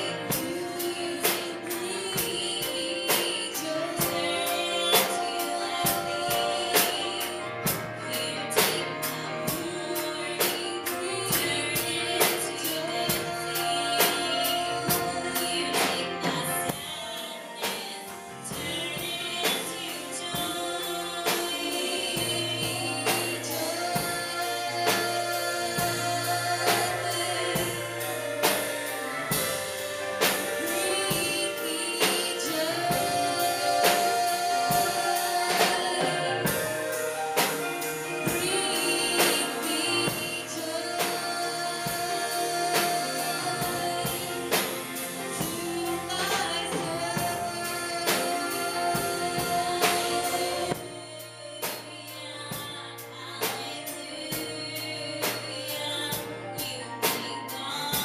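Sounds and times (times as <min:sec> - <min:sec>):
drum kit beat: 0:00.0 - 0:58.0
gospel singing: 0:00.0 - 0:58.0.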